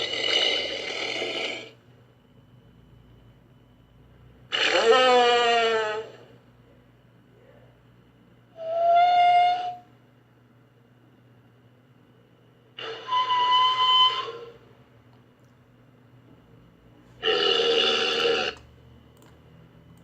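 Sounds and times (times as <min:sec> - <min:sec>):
sea lion calling: 0:04.5 - 0:06.1.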